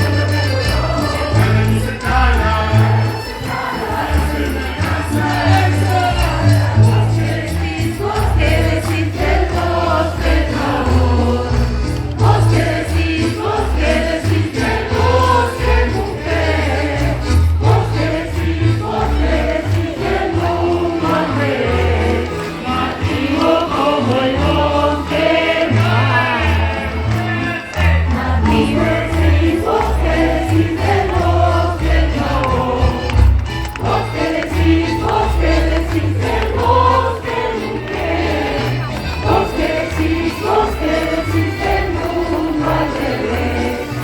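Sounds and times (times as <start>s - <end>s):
massed choir singing: 0.0s - 44.0s.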